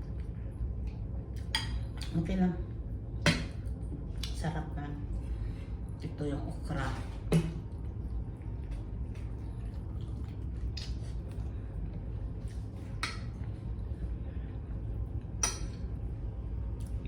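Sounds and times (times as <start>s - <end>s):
steady low hum: 0.0s - 17.0s
person chewing food: 7.7s - 15.4s.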